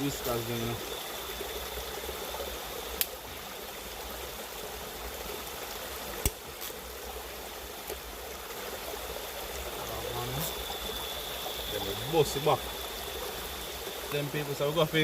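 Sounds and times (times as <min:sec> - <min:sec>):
river water running: 0:00.0 - 0:15.0
sharp click: 0:03.0 - 0:03.2.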